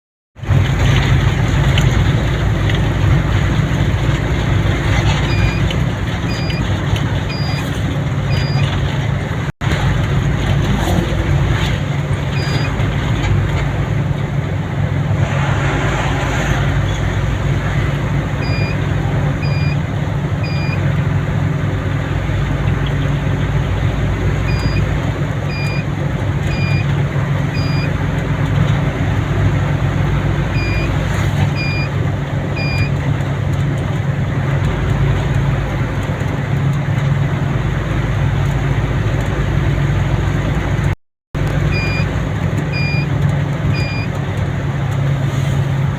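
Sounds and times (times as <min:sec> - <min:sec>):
vehicle engine and road rumble: 0:00.4 - 0:45.9
short high beeps: 0:07.3 - 0:07.7, 0:12.4 - 0:12.7, 0:18.4 - 0:18.8, 0:41.7 - 0:42.1.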